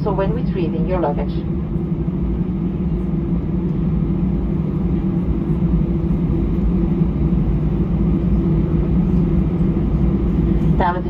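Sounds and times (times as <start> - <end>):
aircraft engines idling: 0.0 - 11.0.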